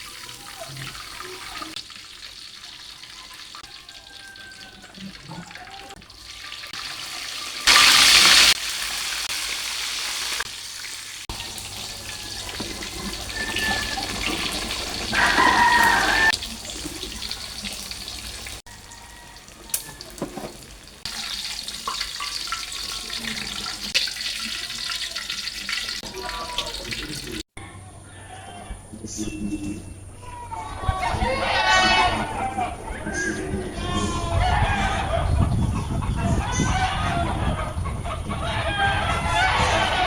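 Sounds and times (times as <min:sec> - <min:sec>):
tap water running into sink: 0:11.3 - 0:27.4.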